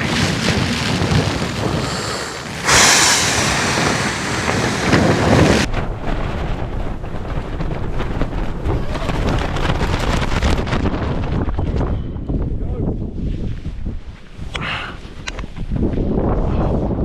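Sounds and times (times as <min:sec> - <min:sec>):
wind buffeting microphone: 0:00.0 - 0:14.5, 0:15.1 - 0:17.0.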